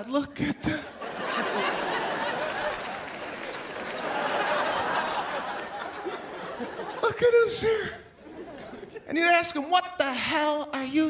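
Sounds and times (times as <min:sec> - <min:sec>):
large audience laughing: 0:00.6 - 0:09.1.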